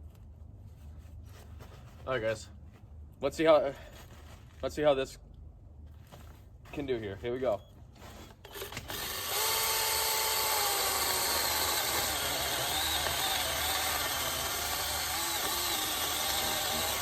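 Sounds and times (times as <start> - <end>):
electric chainsaw cutting wood: 8.5 - 17.0.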